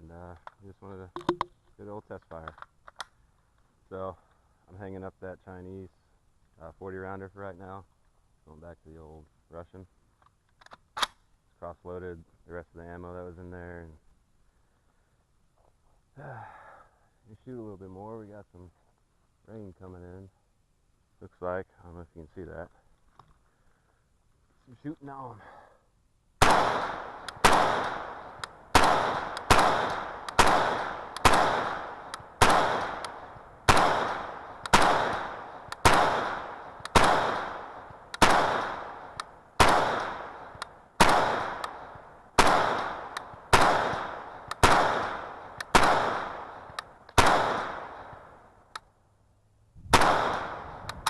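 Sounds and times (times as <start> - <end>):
rifle shots with echo: 26.4 - 48.4, 49.9 - 51.0.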